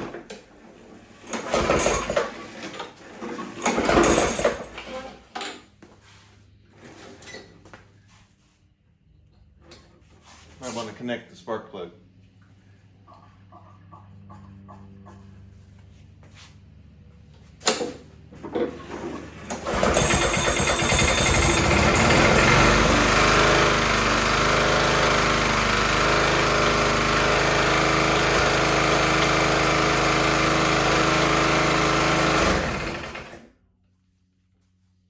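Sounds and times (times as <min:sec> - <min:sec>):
lawn mower engine running: 0:01.2 - 0:02.4, 0:18.4 - 0:33.5.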